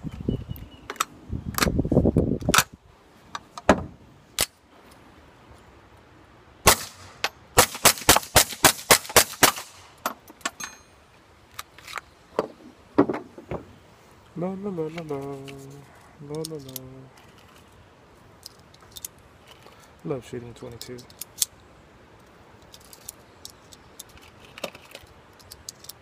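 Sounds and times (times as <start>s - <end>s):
gunshots: 6.7s - 9.8s.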